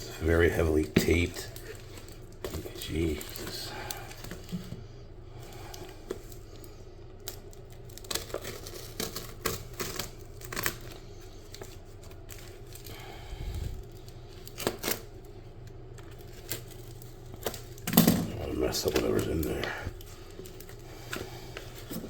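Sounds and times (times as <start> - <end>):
packing tape ripping: 5.6 - 13.2, 13.8 - 22.0.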